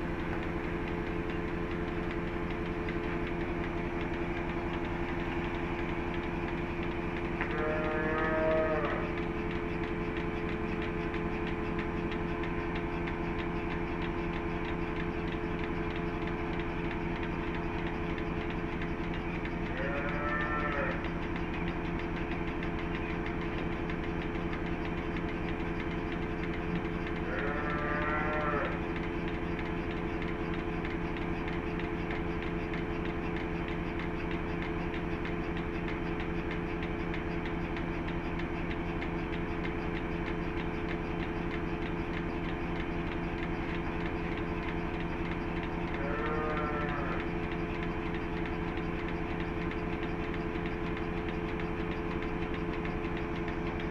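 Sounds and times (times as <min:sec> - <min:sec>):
motor humming: 0:00.0 - 0:53.9
cattle calling: 0:07.4 - 0:09.2, 0:19.6 - 0:21.1, 0:27.3 - 0:28.8, 0:45.7 - 0:47.3.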